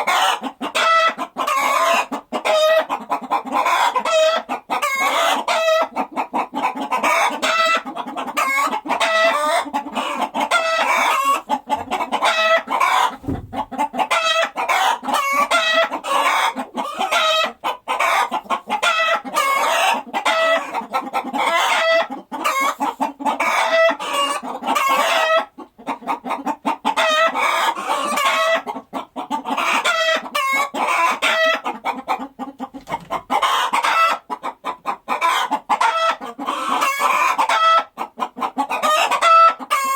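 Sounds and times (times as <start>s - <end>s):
chickens clucking: 0.0s - 39.9s.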